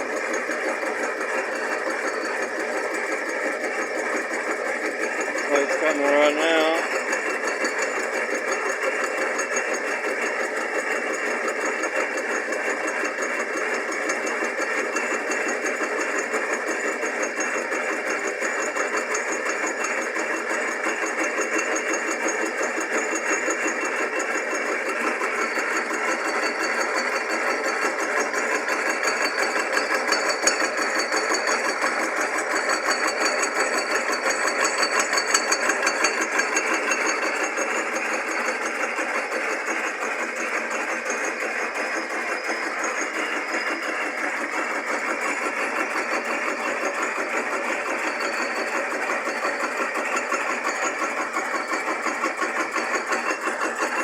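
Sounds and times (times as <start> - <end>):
cutter skimming metal: 0.0 - 54.0
drill press motor running: 0.0 - 54.0.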